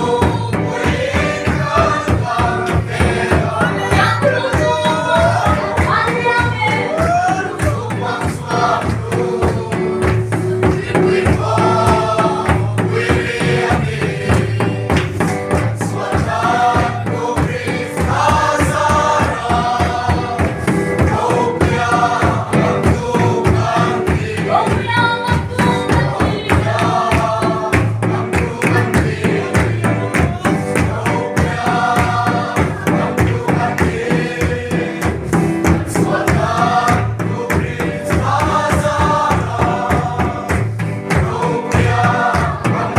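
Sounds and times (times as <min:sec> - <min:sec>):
congregation singing a hymn: 0:00.0 - 0:42.9
instrumental accompaniment: 0:00.0 - 0:42.9
steady percussive beat: 0:00.0 - 0:42.9.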